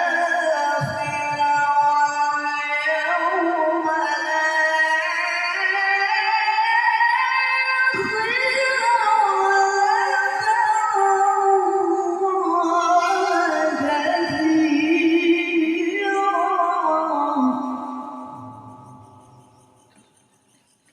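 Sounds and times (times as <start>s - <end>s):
person singing over music: 6.6s - 18.3s.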